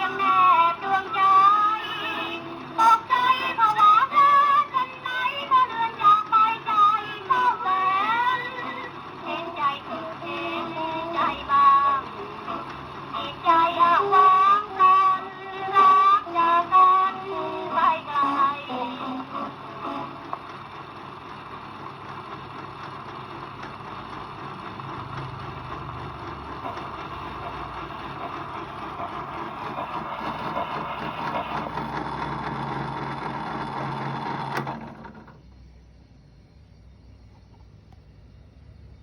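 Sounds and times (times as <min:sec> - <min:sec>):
scratchy gramophone needle noise: 0:00.0 - 0:21.5, 0:26.3 - 0:35.4.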